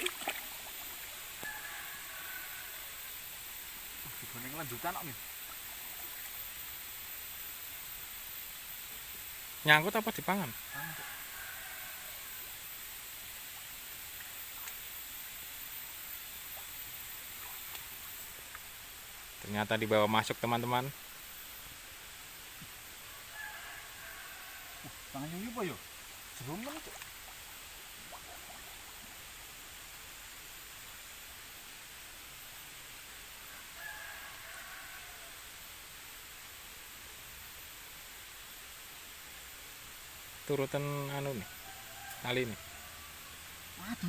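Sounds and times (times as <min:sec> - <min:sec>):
faint drawn-out call: 0:00.0 - 0:06.6, 0:09.6 - 0:12.7, 0:22.5 - 0:29.5, 0:33.1 - 0:35.7, 0:40.4 - 0:44.0
outdoor background hiss: 0:00.0 - 0:44.0.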